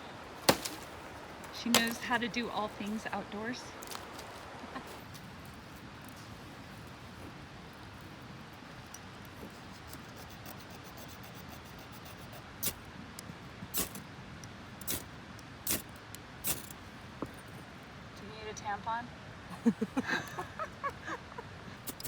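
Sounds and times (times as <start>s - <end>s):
fire starter scraping: 0.0s - 8.1s, 8.8s - 17.4s.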